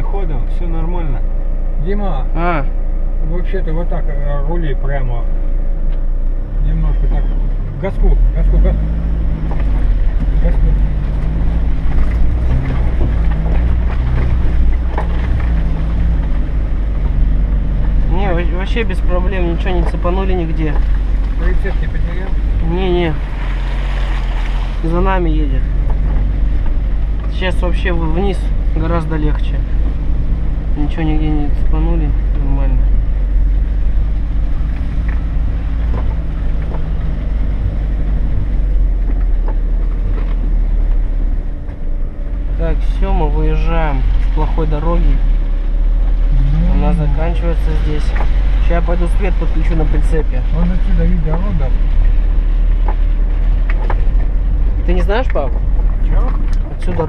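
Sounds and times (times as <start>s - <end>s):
road rumble: 0.0s - 57.0s
van engine low drone: 0.0s - 57.0s
vehicle knocking over ruts: 7.2s - 57.0s
knocks and rattles from bumps: 9.3s - 18.0s.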